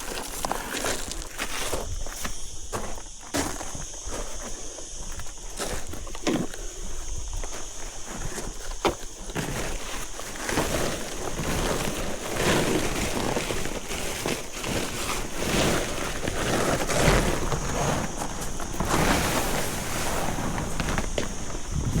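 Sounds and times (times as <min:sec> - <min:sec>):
wind buffeting microphone: 0:17.0 - 0:22.0
high-pitched hiss: 0:17.4 - 0:22.0.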